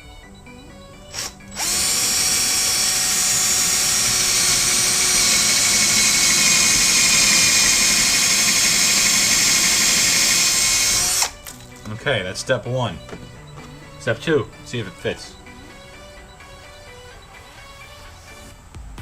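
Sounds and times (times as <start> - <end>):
power drill boring into wall: 1.1 - 11.4.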